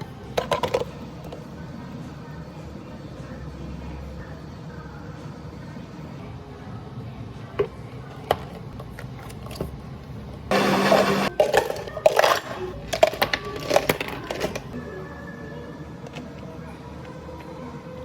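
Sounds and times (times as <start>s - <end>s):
machine whir: 10.5s - 11.3s
cups and utensils clinking: 10.5s - 14.8s.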